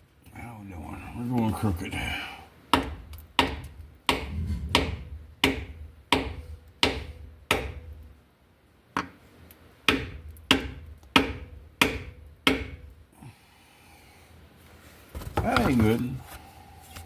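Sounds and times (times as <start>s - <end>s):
hammer blows on wooden board: 4.1s - 7.8s.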